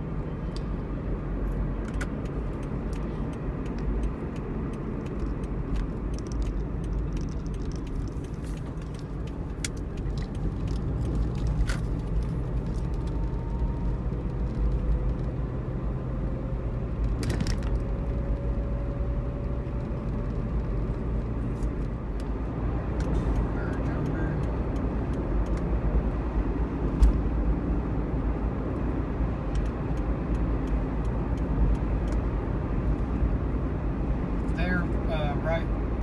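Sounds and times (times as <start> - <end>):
road and engine rumble: 0.0 - 36.0.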